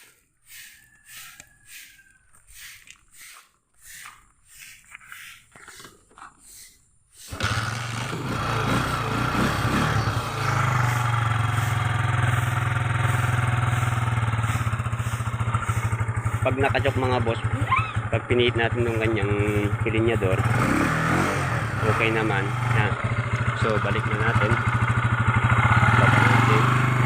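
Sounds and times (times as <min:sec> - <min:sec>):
motorcycle engine idling: 0:07.3 - 0:27.0.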